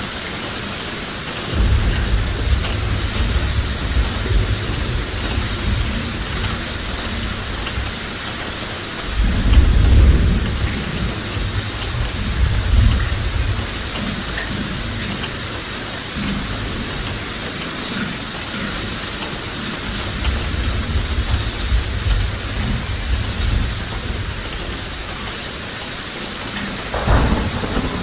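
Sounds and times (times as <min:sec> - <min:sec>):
rain hissing: 0:00.0 - 0:28.0
low rolling thunder: 0:01.5 - 0:17.3, 0:19.8 - 0:25.5, 0:26.8 - 0:28.0.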